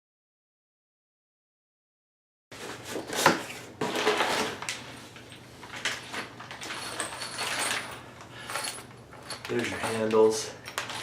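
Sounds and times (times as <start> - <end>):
cardboard scraping and rustling: 2.6 - 4.7.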